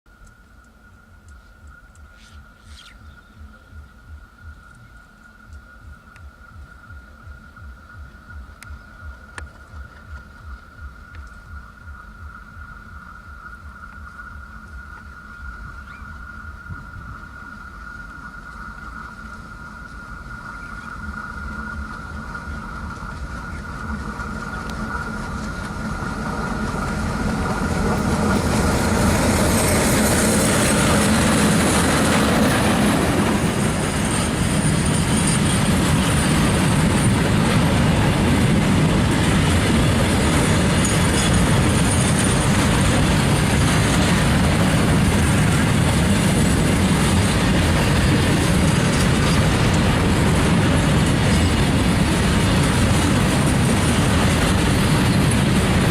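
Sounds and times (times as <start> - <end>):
freight train rumbling: 0.8 - 55.9
wheels squealing on rails: 11.7 - 55.9.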